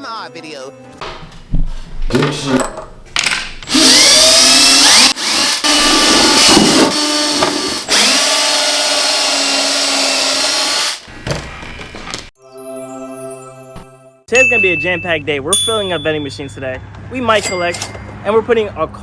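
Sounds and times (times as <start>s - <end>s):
power drill whirring: 3.6s - 11.1s.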